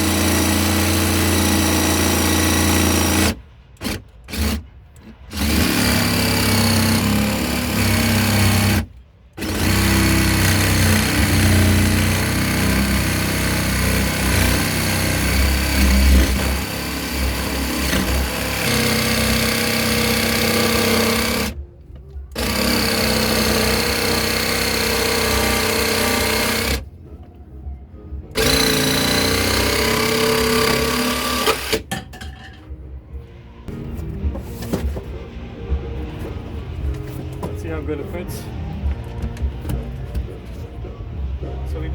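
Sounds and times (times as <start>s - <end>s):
jigsaw cutting: 0.0s - 4.6s, 5.2s - 21.6s, 22.3s - 26.8s, 28.4s - 31.8s.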